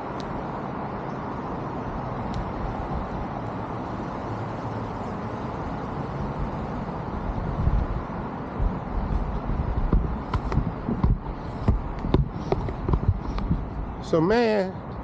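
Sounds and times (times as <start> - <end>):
road traffic: 0.0 - 15.0
low thumps: 9.6 - 13.8.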